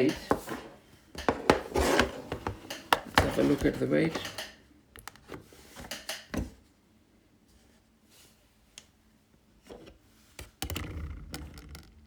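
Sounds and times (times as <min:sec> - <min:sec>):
handling and rustling: 0:00.0 - 0:04.5
pencil clicking and tapping on scale: 0:00.0 - 0:04.6.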